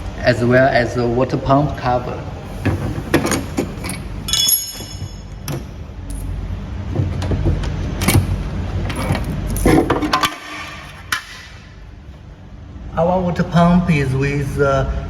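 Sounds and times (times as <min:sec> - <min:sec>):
metal parts clicking and clattering: 0:03.2 - 0:06.4, 0:07.0 - 0:11.4
metallic ring: 0:04.2 - 0:05.5.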